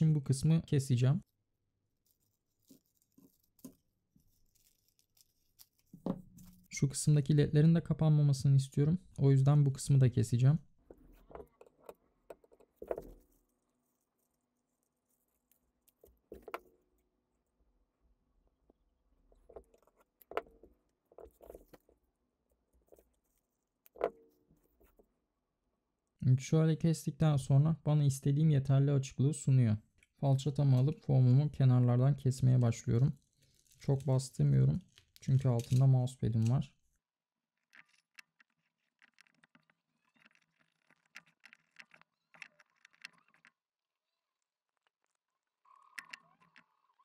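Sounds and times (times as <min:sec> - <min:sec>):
faint clicks and scrapes: 0:01.2 - 0:06.8, 0:10.8 - 0:17.5, 0:18.5 - 0:25.2, 0:29.8 - 0:47.0
knife scratching through foam: 0:02.0 - 0:06.7.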